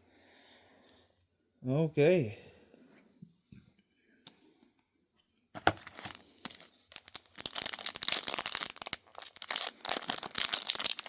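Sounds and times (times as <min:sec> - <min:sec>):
wrapper crackling: 0:05.8 - 0:11.0.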